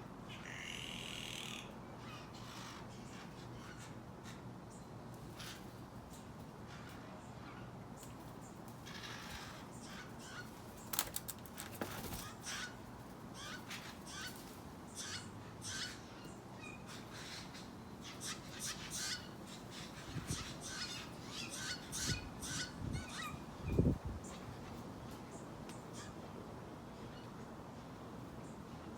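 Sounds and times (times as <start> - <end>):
young jay raspy calls: 0.3 - 4.4, 8.8 - 10.6, 12.1 - 24.4.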